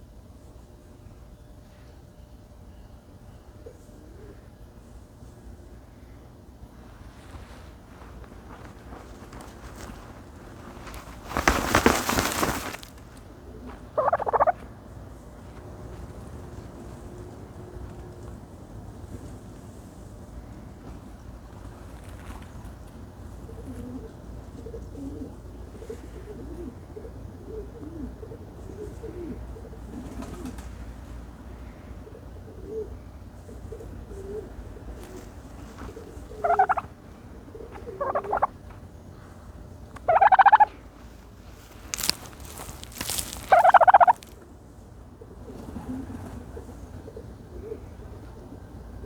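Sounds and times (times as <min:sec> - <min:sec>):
turkey calling: 0:13.5 - 0:14.8, 0:33.5 - 0:39.3, 0:39.9 - 0:44.4.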